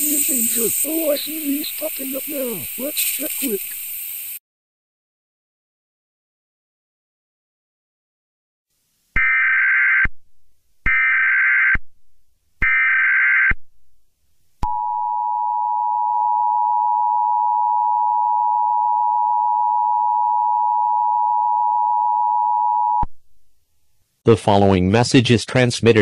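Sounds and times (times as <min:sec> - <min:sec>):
data tone bursts: 0:00.0 - 0:04.4.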